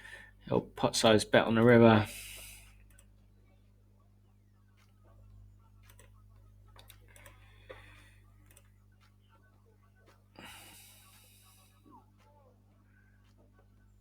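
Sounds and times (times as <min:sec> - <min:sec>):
computer mouse clicks: 0:02.6 - 0:03.1, 0:05.8 - 0:06.2, 0:06.8 - 0:09.1.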